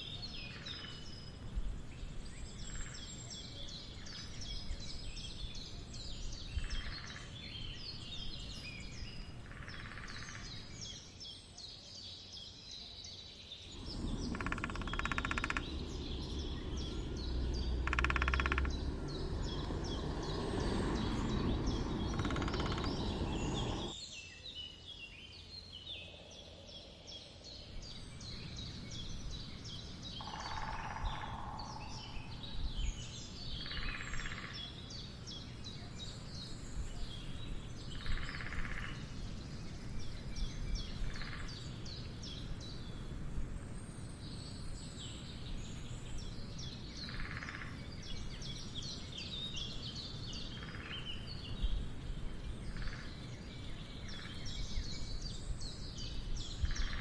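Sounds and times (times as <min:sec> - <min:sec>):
small birds chirping: 0:00.0 - 0:57.0
woodpecker drumming: 0:13.7 - 0:19.8, 0:21.9 - 0:23.9
low rumble: 0:13.7 - 0:24.0.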